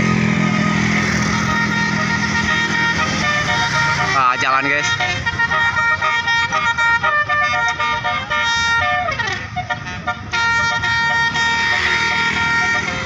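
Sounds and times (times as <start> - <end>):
bus musical horn tune: 0.0 - 13.0.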